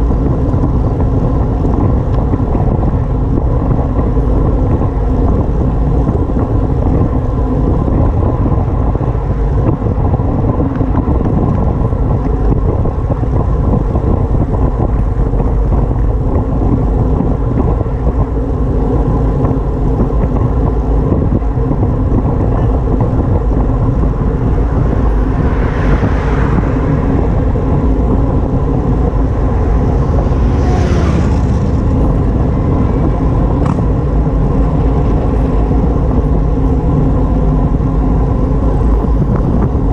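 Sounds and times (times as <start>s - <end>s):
wind and road noise: 0.0s - 39.9s.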